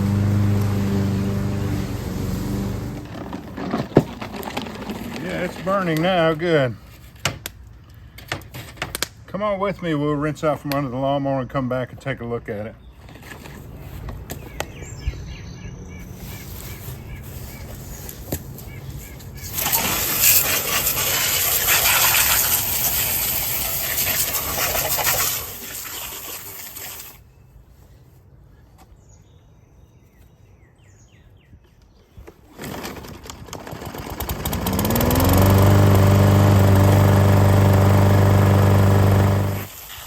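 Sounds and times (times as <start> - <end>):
garden hose spraying water: 0.0 - 3.2, 19.2 - 27.2, 34.0 - 40.0
lawn mower engine running: 0.0 - 6.9, 16.0 - 27.1, 32.4 - 40.0.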